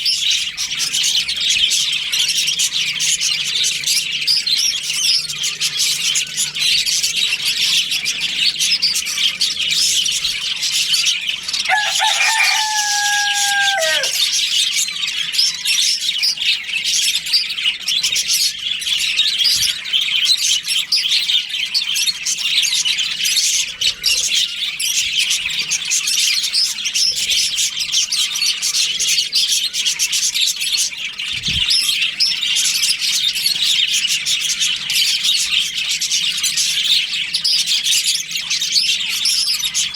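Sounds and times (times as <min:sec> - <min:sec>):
budgerigars chirping and chattering: 0:00.0 - 0:39.9
long low bird call: 0:11.7 - 0:14.4.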